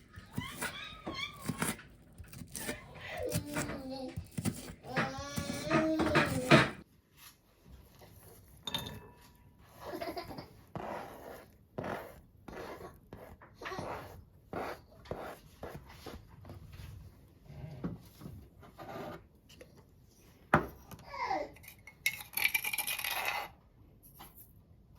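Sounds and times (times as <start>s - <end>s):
dishes and utensils scraping: 0.0s - 6.8s.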